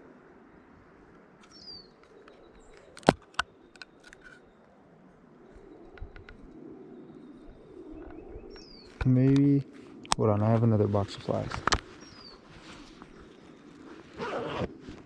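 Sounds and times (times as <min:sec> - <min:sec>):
birds chirping: 0:01.4 - 0:14.7
sharp clicks: 0:05.9 - 0:06.4.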